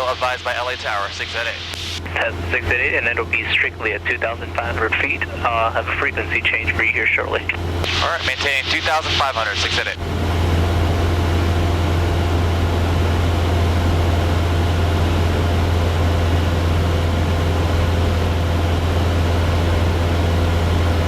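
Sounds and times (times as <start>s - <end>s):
airplane engine droning in cabin: 0.0s - 21.0s.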